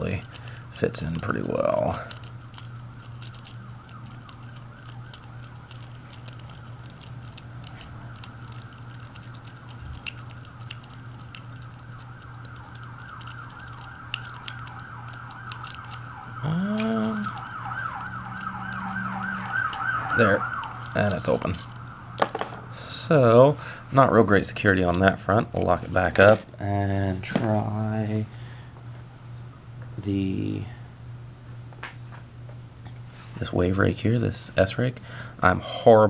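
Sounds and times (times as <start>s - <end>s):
wavering high whine: 0.0s - 28.3s
steady low hum: 0.0s - 36.0s
metallic clicking and scraping in lock: 17.2s - 21.8s.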